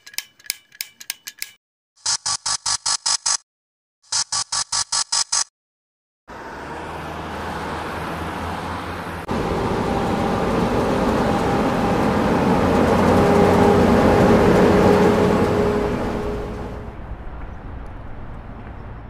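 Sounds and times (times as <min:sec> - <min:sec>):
vehicle passing by: 0:06.3 - 0:19.0.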